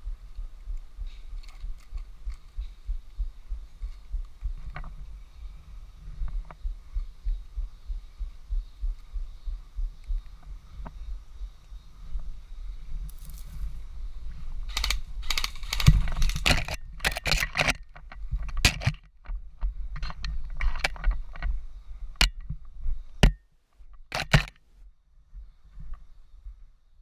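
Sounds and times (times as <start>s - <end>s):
crunching through dry brush: 13.0s - 13.9s.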